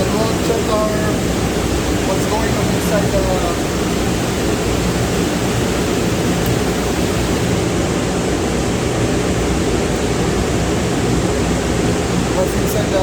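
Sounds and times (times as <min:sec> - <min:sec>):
steady rushing noise: 0:00.0 - 0:08.5.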